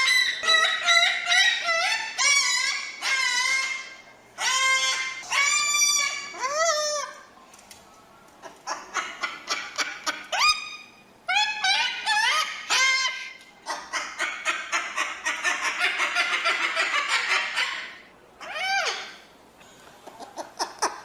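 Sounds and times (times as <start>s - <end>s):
cockatoo chattering: 8.4s - 19.2s, 20.0s - 21.0s.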